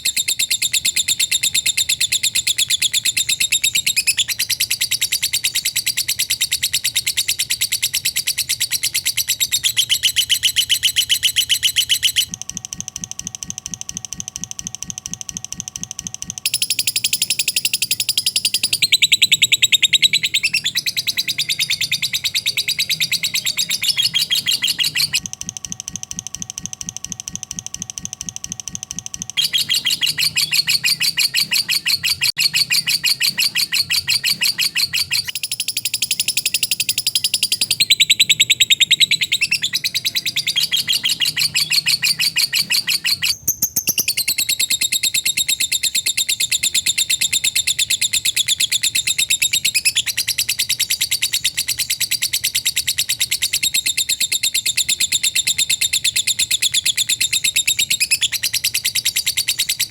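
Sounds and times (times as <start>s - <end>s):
lovebird shrill chatter: 16.5s - 25.2s, 29.4s - 47.1s.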